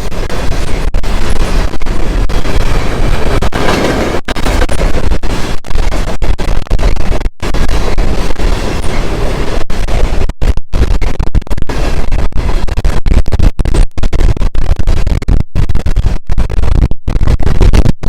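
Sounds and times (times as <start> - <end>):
freight train wheels rumbling on rail: 0.0 - 10.4, 11.7 - 12.6.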